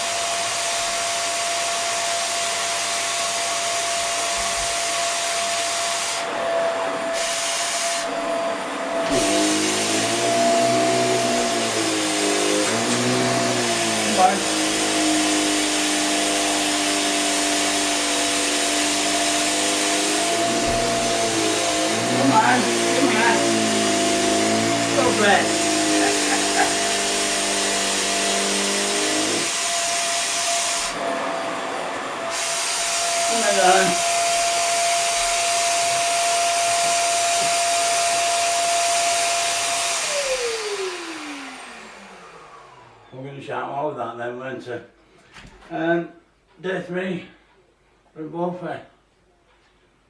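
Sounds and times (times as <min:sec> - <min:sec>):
vacuum cleaner running on carpet: 0:00.0 - 0:43.1
motor spinning down: 0:18.2 - 0:29.5.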